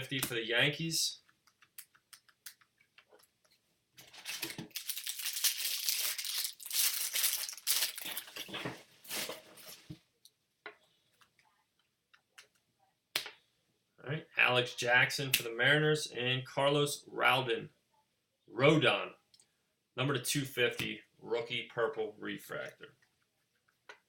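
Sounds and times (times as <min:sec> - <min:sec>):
wrapper crinkling: 0:04.0 - 0:09.8
foil pack tearing: 0:04.1 - 0:08.5.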